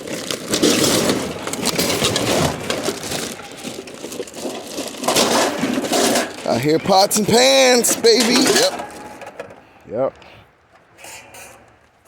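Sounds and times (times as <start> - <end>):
junk crunching and scraping: 0.0 - 12.0
pots and pans clanking: 0.6 - 9.6.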